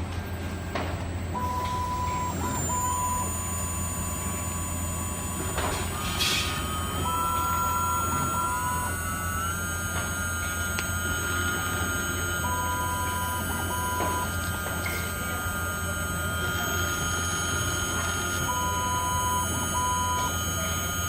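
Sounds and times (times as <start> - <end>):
steady low hum: 0.0 - 21.0
stepper motors whining: 0.2 - 21.0.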